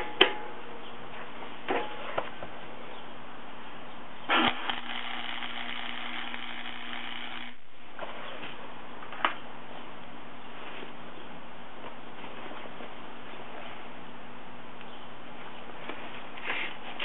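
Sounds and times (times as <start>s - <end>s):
welding arc crackling and buzzing: 4.3s - 7.7s.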